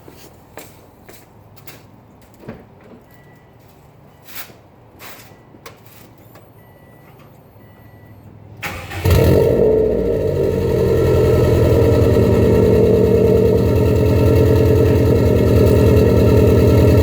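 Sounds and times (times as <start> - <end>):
short electronic beeps: 6.3 - 8.3
car starter cranking: 8.6 - 10.4
loud car engine running: 8.7 - 17.0.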